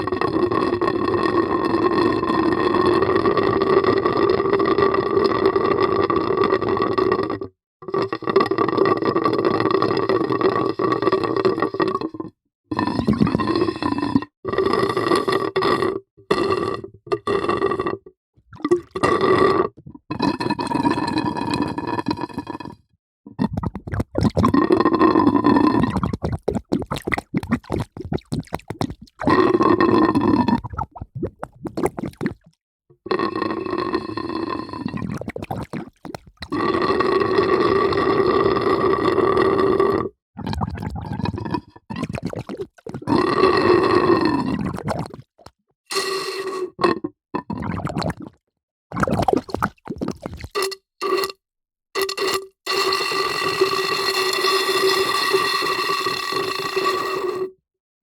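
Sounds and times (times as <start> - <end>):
water gurgling: 18.5 - 20.6, 23.4 - 32.6, 34.8 - 36.6, 40.4 - 51.3.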